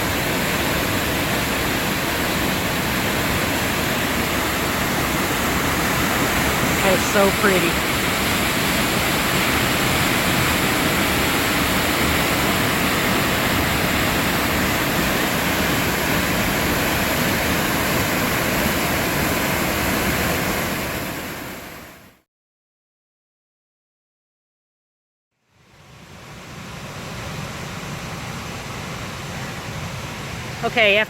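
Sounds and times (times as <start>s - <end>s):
waterfall rushing: 0.0s - 21.8s.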